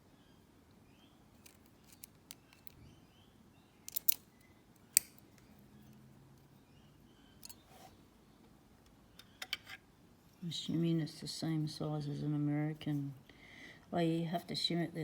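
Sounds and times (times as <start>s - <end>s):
small metal clicks and scrapes: 1.4s - 2.8s, 3.9s - 5.9s, 7.4s - 7.9s.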